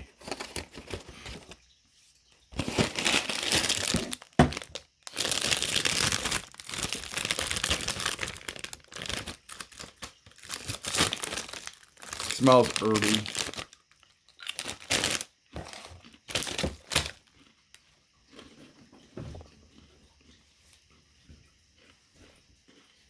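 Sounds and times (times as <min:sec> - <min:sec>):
box wrapper crinkling and tearing: 0:00.0 - 0:01.6, 0:02.6 - 0:17.3.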